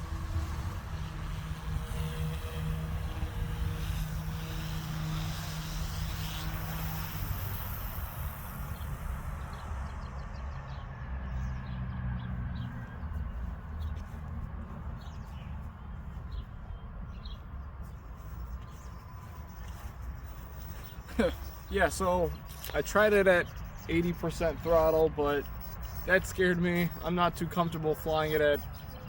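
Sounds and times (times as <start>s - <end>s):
rc helicopter motor whine: 0.0s - 10.6s, 17.8s - 29.0s.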